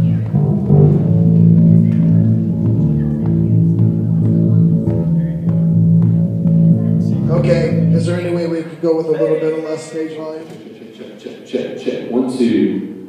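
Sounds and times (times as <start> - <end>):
sustained low band chords: 0.0 - 9.1.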